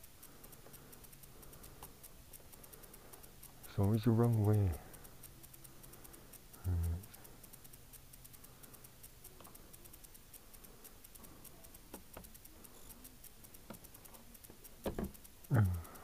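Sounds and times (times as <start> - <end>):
fast faint ticking: 0.0 - 16.0
hand tools clicking on a fastener: 6.3 - 16.0.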